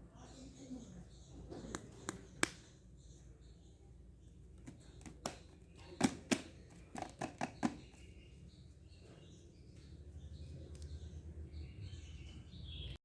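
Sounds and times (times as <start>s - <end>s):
small objects clicking and tapping: 4.6s - 8.1s.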